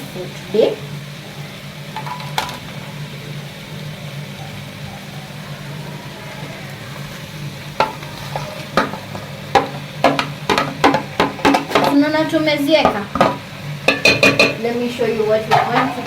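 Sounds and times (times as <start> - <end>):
potatoes sizzling in a pan: 0.0 - 16.0
utensil knocking against pan: 7.8 - 12.0, 12.8 - 14.6.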